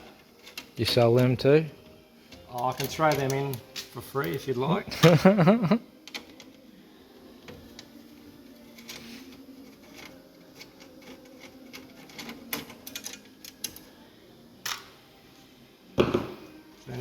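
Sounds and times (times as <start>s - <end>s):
small metal hardware clicking: 9.9s - 13.8s.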